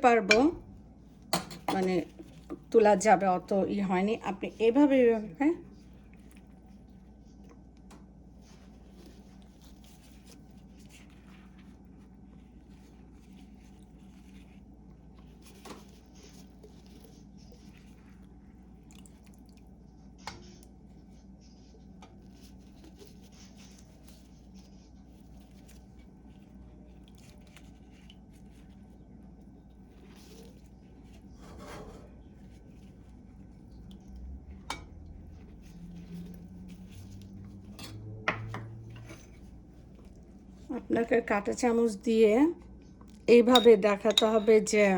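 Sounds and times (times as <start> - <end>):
steady low hum: 0.0 - 44.9
soft scrape: 30.0 - 32.9, 35.2 - 40.6.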